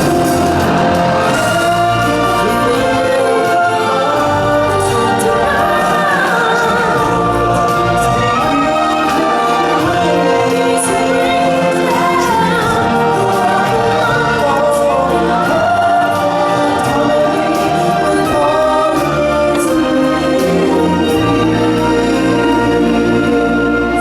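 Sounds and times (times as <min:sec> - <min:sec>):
choir singing: 0:00.0 - 0:24.0
musical backing: 0:00.0 - 0:24.0.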